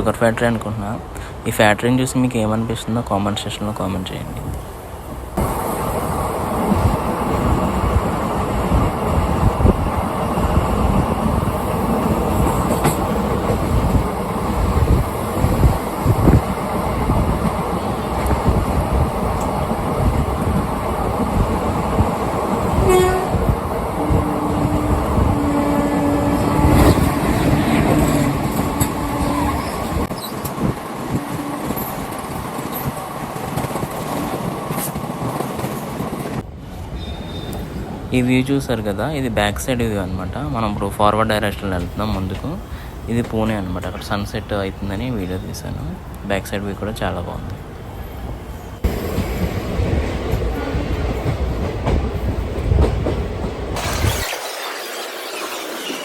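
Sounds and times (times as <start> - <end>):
train rumble and rail noise: 0.0 - 54.2.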